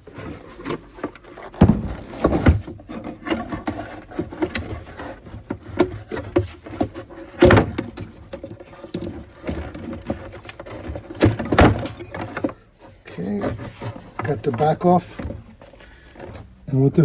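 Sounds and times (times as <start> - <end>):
radio cabinet knocks and rubbing: 0.0 - 16.6
loud thumps: 1.6 - 2.7.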